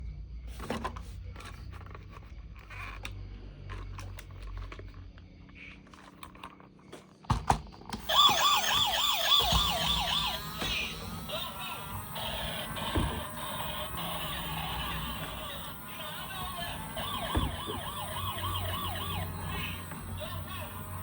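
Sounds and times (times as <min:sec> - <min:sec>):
toy electronic siren wailing: 0:08.0 - 0:21.0.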